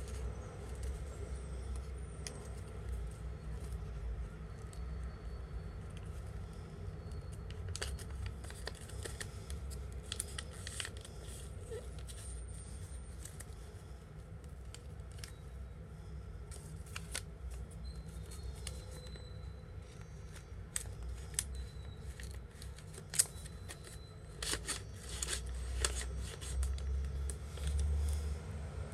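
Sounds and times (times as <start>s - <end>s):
paper rustling and crinkling: 7.3s - 15.5s, 16.5s - 28.4s.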